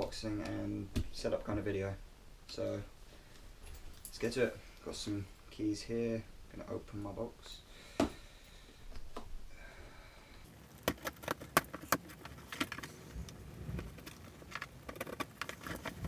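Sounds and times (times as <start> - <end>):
key scratching and tearing tape: 10.6 - 16.0.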